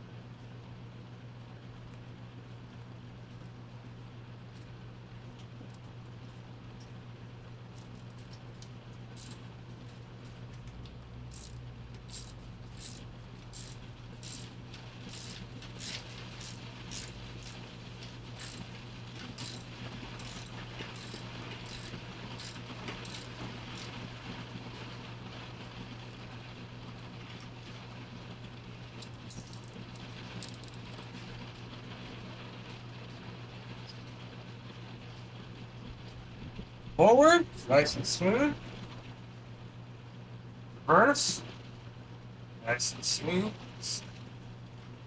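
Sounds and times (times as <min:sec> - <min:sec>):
low hum: 0:03.4 - 0:25.1
sharp metallic clicks: 0:11.3 - 0:17.6.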